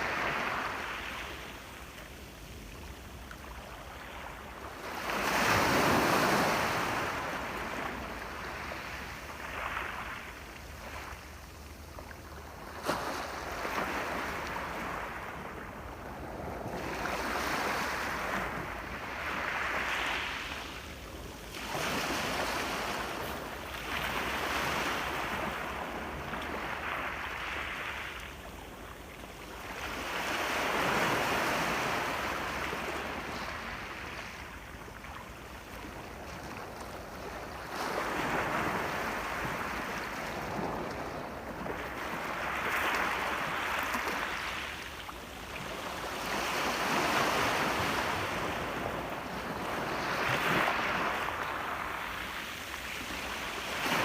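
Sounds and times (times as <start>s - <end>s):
sea waves breaking: 37.6s - 54.0s.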